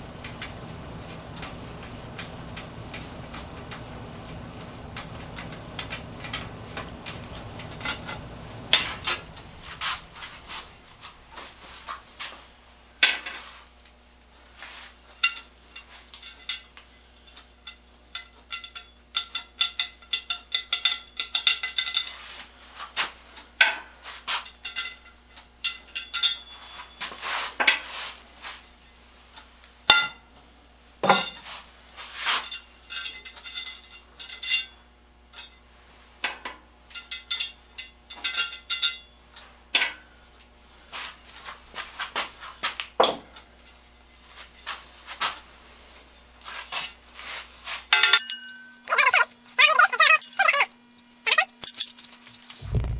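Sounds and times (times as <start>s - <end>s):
low rumble: 0.0s - 11.9s, 52.6s - 52.9s
metal tools clinking: 47.9s - 50.7s, 51.3s - 52.5s.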